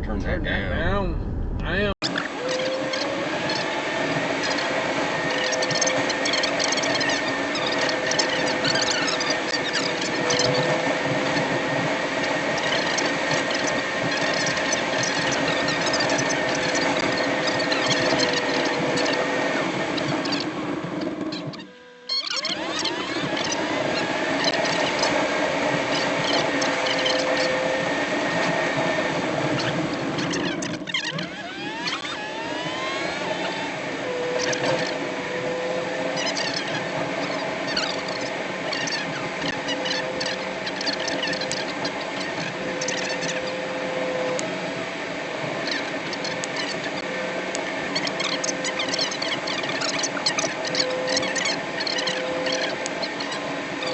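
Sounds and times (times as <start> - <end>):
vehicle cabin engine and road hum: 0.0 - 7.5
road and engine noise: 0.0 - 21.8, 22.5 - 53.9
short high squeaks: 2.0 - 3.8, 4.4 - 11.4, 12.5 - 25.3, 25.9 - 28.8, 29.5 - 44.4, 45.6 - 47.1, 47.9 - 53.9.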